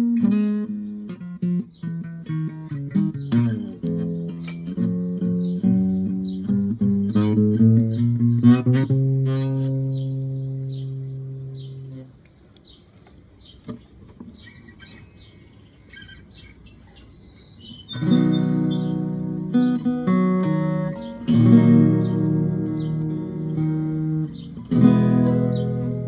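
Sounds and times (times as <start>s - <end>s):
guitar plucked: 0.0s - 12.2s, 17.9s - 26.0s.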